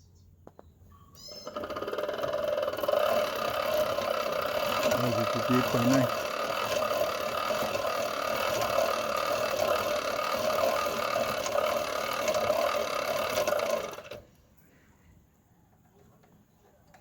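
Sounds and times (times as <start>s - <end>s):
electric motor whining: 1.3s - 14.3s.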